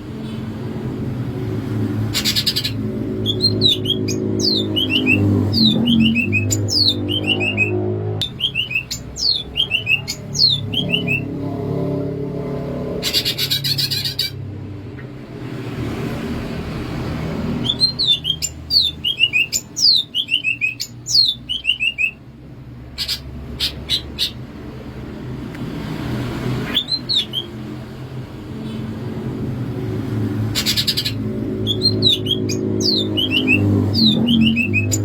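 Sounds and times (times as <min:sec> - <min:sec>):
bird singing whistled notes: 0:02.2 - 0:11.3, 0:17.6 - 0:22.2, 0:26.7 - 0:27.6, 0:30.6 - 0:35.0.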